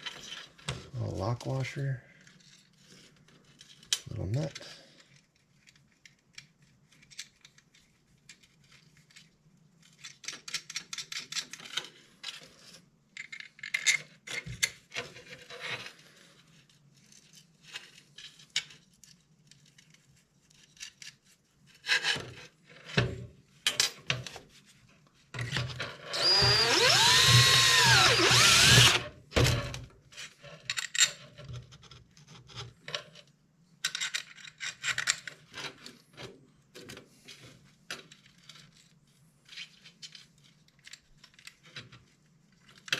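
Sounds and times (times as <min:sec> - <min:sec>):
small metal parts clicking: 0:03.4 - 0:12.4, 0:13.2 - 0:14.7, 0:33.8 - 0:35.4
handheld power tool motor: 0:26.1 - 0:29.1.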